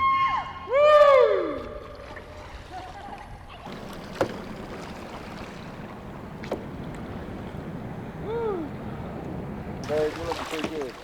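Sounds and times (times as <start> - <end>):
wind: 0.0 - 11.0
water wash: 1.6 - 11.0
short sharp knocks: 3.7 - 5.4.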